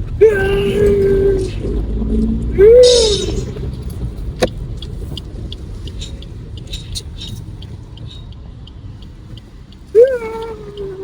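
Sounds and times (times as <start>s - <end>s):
car road and engine rumble: 0.0s - 11.0s
faint light ticks: 3.1s - 11.0s.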